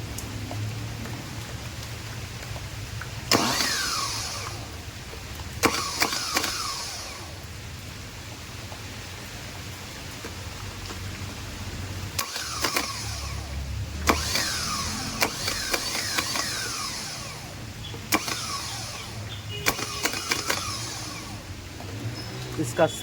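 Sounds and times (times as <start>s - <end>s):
starter motor whirring: 3.2s - 7.5s, 12.1s - 22.8s
starter switch clicks: 5.6s - 7.2s, 14.0s - 17.4s, 18.0s - 21.4s.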